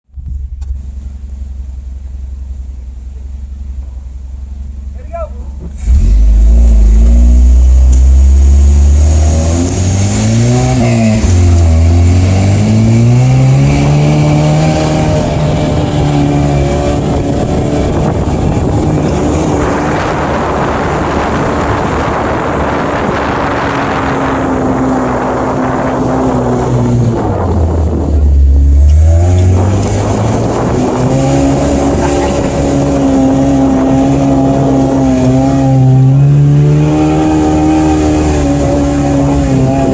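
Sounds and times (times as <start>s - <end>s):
car engine accelerating: 0.1s - 39.9s
wind on microphone: 10.2s - 39.9s.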